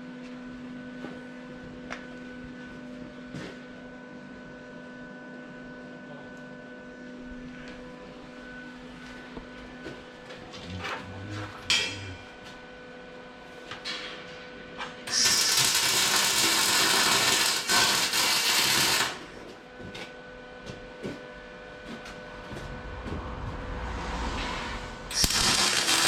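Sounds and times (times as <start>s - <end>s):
metal clank: 11.7s - 12.2s
arc welding crackling: 15.1s - 19.4s, 25.1s - 26.0s.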